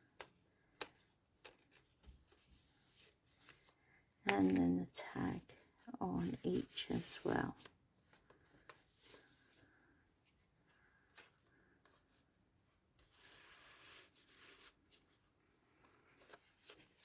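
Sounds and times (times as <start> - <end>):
paper rustling and tapping: 0.0 - 4.7.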